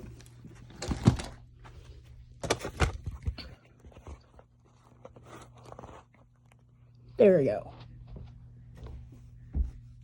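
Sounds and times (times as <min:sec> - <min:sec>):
scraping and rustling: 0:00.0 - 0:06.6
faint low hum: 0:00.0 - 0:10.0.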